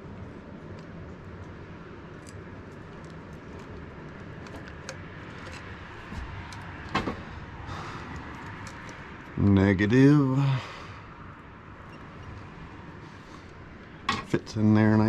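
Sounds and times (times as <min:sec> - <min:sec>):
steady low hum: 0:00.0 - 0:15.0
small clicks and handling noises: 0:00.6 - 0:07.1, 0:08.1 - 0:09.4.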